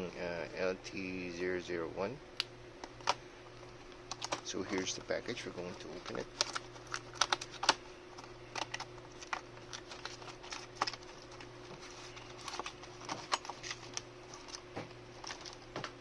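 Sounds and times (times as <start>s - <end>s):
faint steady hum: 0.0s - 16.0s
package clicks taps and rustles: 4.0s - 5.1s, 6.1s - 16.0s.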